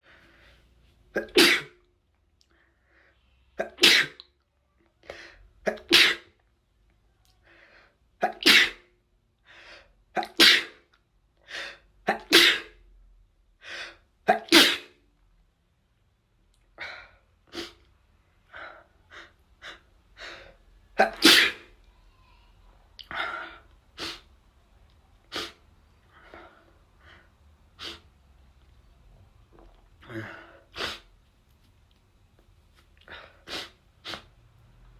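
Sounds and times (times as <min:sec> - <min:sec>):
person sneezing: 0:01.1 - 0:01.8, 0:03.6 - 0:04.2, 0:05.6 - 0:06.4, 0:08.2 - 0:08.9, 0:10.2 - 0:10.9, 0:12.0 - 0:12.8, 0:14.3 - 0:15.0, 0:21.0 - 0:21.8, 0:25.3 - 0:25.6, 0:30.0 - 0:31.1.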